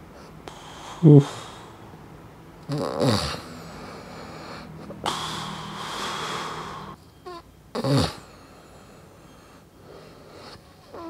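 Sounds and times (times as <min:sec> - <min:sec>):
man snoring: 0:00.5 - 0:01.8, 0:02.6 - 0:08.5.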